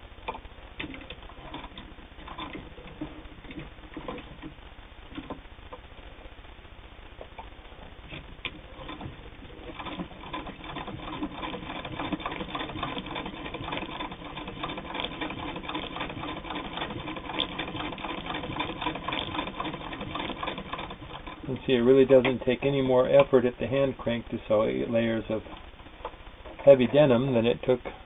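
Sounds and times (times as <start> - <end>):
sewing machine clicking: 8.4 - 22.4.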